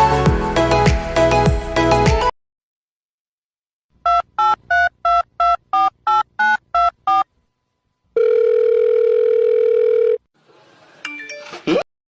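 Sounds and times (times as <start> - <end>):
telephone line tone: 8.2 - 10.2.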